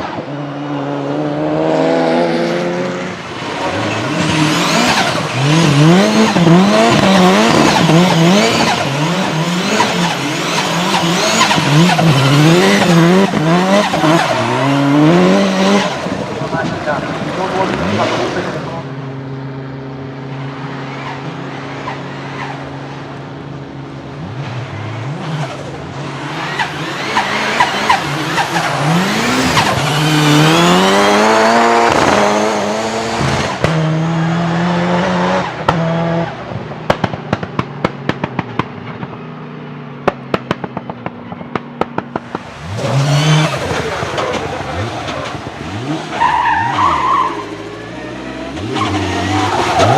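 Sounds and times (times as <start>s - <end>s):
car engine revving: 0.0s - 49.9s
engine crackles: 35.5s - 49.9s
tyres squealing: 42.6s - 49.9s.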